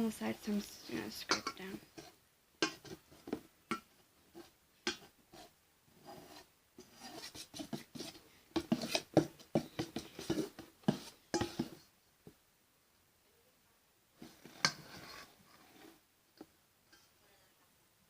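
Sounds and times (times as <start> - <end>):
spoon scraping a bowl: 4.9 - 9.1, 9.8 - 11.8, 14.3 - 16.0.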